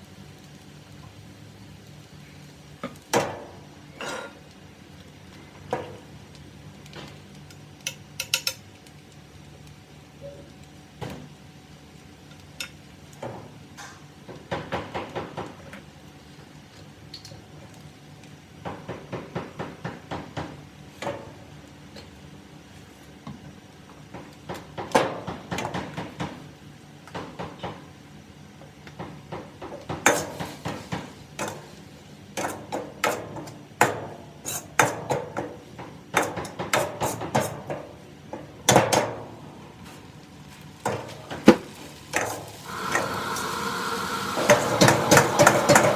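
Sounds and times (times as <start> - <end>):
metal spatula scraping a wok: 34.4 - 35.0.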